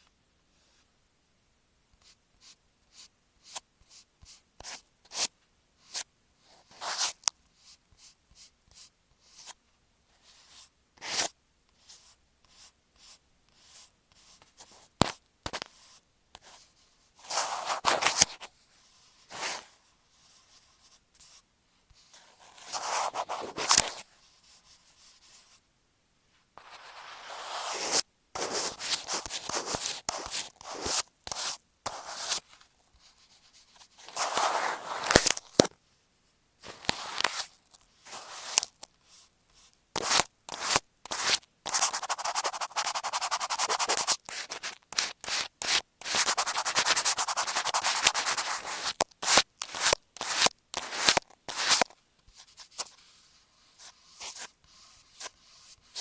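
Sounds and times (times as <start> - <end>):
taps and scratches on microphone: 14.4 - 15.8, 26.6 - 32.7, 33.7 - 35.8, 36.6 - 39.0, 40.0 - 53.0
rough rubbing on microphone: 19.2 - 19.8, 22.1 - 24.6, 26.6 - 32.5, 33.1 - 35.4, 40.0 - 56.0.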